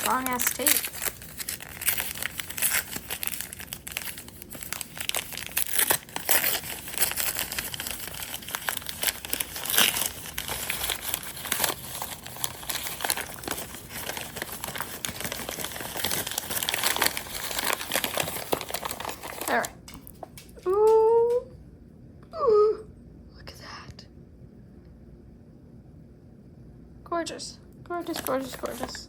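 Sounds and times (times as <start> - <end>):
tape tearing: 0.0 - 19.7
packing wrap crinkling: 0.0 - 21.4, 28.0 - 29.0.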